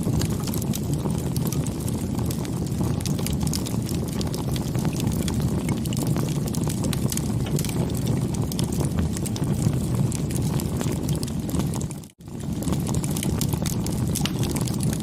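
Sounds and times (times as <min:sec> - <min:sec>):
bonfire flames rumbling: 0:00.0 - 0:15.0
fire crackling and popping: 0:00.0 - 0:15.0.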